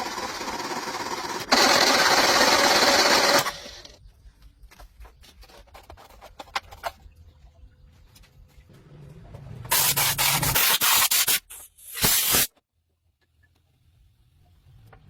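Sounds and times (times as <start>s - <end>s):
power tool running: 0.0s - 4.0s.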